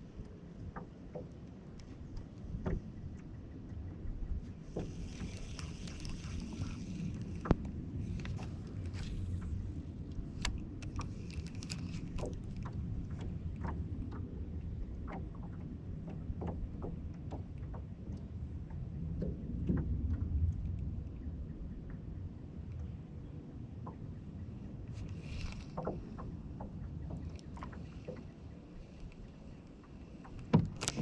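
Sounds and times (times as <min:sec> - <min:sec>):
wind buffeting microphone: 0:02.0 - 0:22.6.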